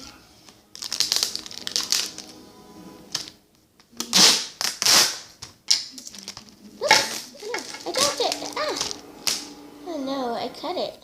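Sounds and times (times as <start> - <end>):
duct tape ripping off roll: 0.8 - 2.4, 3.1 - 9.5.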